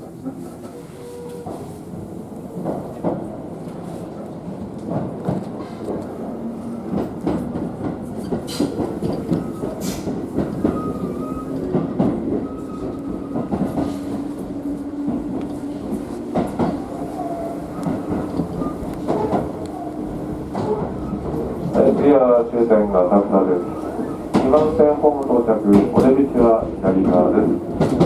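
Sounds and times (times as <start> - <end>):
train rumble: 0.0 - 28.0
train wheels clicking over rail joints: 6.8 - 28.0.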